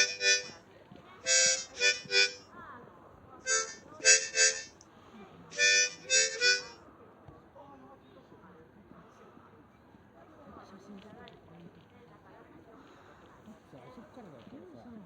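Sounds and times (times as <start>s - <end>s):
harmonica-like reed tones: 0.0s - 0.5s, 1.3s - 2.4s, 3.5s - 4.7s, 5.6s - 6.7s.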